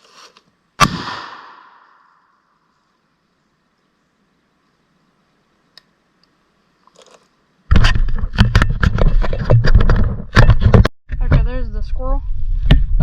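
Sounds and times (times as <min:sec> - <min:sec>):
faint click: 0:05.7 - 0:06.4.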